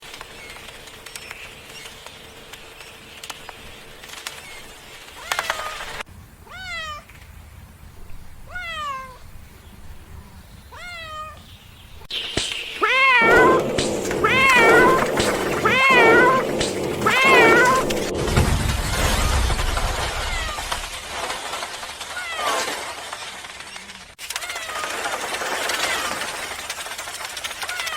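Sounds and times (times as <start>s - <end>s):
cat meowing: 6.4s - 7.1s, 8.4s - 9.3s, 10.7s - 11.4s, 12.8s - 18.1s
rush of noise: 12.1s - 20.9s.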